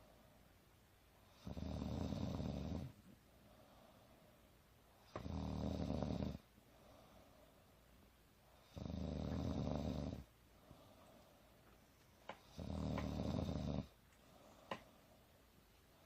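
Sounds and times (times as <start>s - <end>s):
woman snoring: 1.4s - 2.9s, 5.2s - 6.4s, 8.6s - 10.3s, 12.5s - 13.9s.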